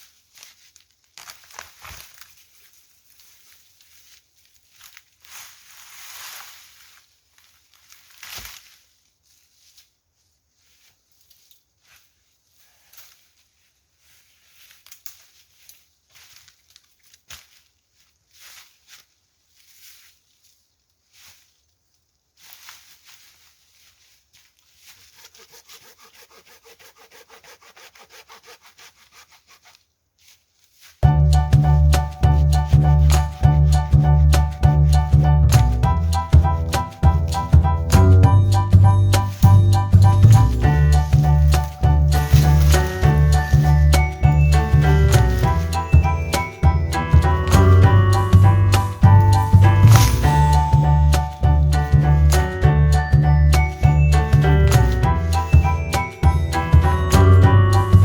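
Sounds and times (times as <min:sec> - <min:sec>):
scraping rustle: 0:00.0 - 0:31.0, 0:40.2 - 0:46.6
dry leaves and twigs rustling: 0:00.0 - 0:58.0
hand saw cutting wood: 0:24.9 - 0:29.9.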